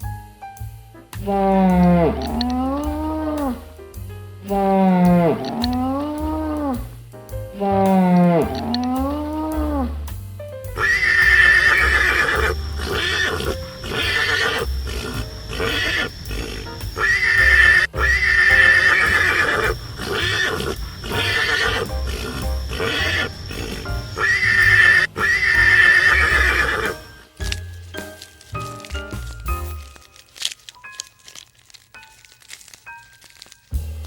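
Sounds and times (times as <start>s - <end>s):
donkey braying: 10.9s - 27.6s.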